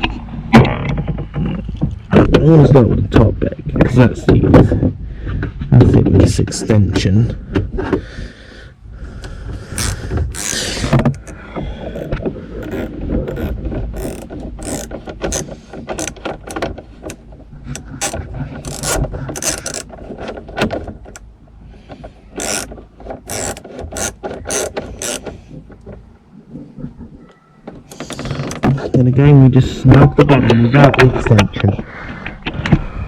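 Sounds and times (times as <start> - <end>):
socket ratchet clicking: 9.8 - 11.4, 12.0 - 17.2, 17.8 - 19.9, 22.4 - 25.3.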